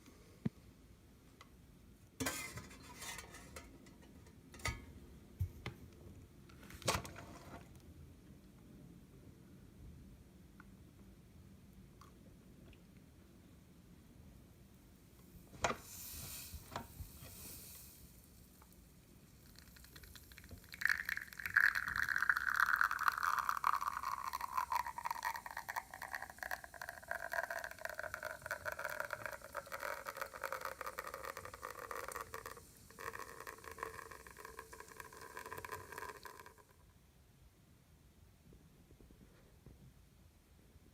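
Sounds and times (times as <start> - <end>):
espresso machine hiss: 15.8 - 18.3
crackling sizzling liquid: 15.8 - 36.8.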